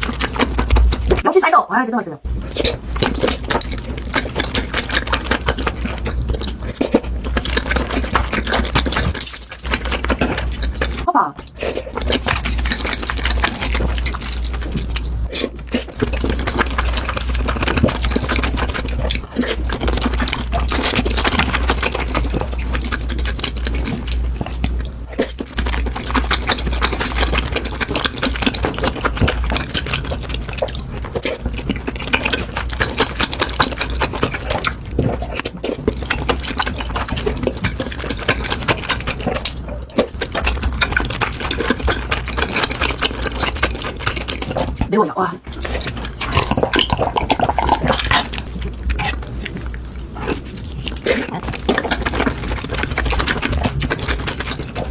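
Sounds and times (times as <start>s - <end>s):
wet chewing and slurping: 0.0s - 1.2s, 2.2s - 54.9s
steady low hum: 0.0s - 54.9s.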